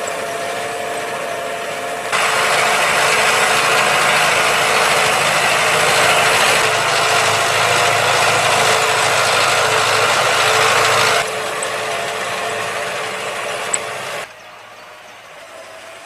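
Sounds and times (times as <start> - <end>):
tractor diesel engine: 0.0 - 16.0
mechanical rattling and clanking: 2.1 - 14.3.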